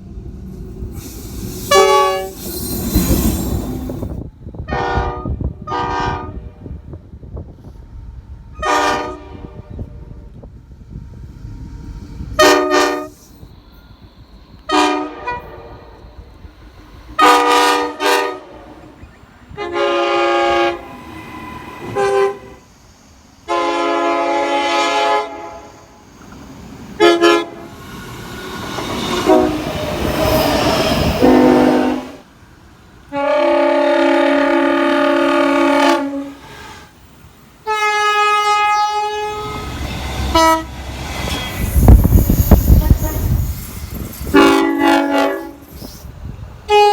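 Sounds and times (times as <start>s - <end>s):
train horn blasts: 1.7s - 2.5s, 4.6s - 6.8s, 8.6s - 10.2s, 12.4s - 13.3s, 14.6s - 16.1s, 17.2s - 22.7s, 23.4s - 25.8s, 27.0s - 27.8s, 29.0s - 32.2s, 33.1s - 36.9s, 37.6s - 40.9s, 41.5s - 43.5s, 44.3s - 45.8s, 46.7s - 46.9s.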